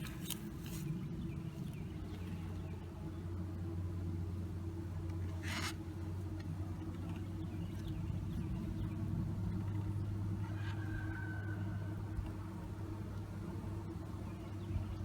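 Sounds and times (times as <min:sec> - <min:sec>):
honey bees humming: 0:00.0 - 0:05.1.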